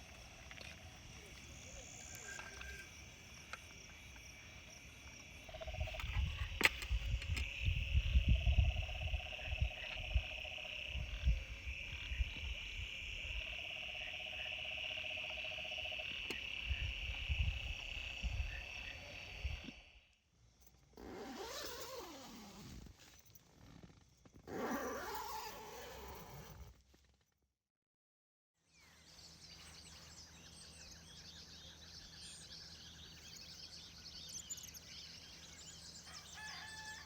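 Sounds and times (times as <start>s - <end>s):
crickets chirring: 0.0s - 26.6s, 28.8s - 37.0s
frog trilling: 8.0s - 12.4s, 13.4s - 19.4s.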